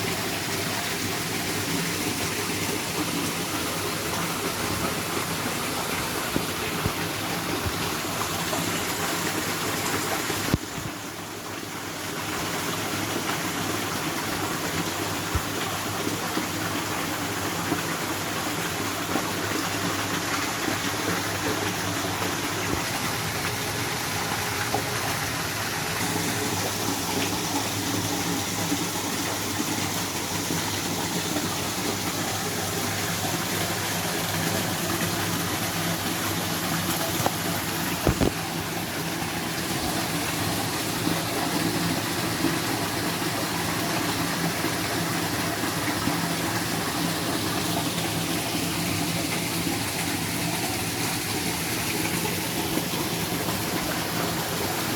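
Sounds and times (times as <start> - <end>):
rushing water: 0.0 - 54.9.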